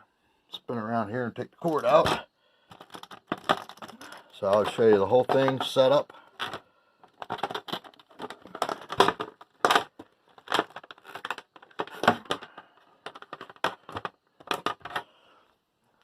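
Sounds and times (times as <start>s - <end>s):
plastic clunks and rattles: 1.9s - 15.1s.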